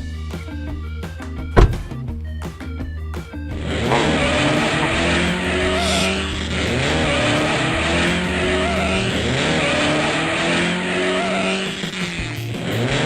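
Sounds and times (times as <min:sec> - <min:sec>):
background music: 0:00.0 - 0:13.0
race car engine revving: 0:03.5 - 0:13.0
tire squeal: 0:03.6 - 0:13.0.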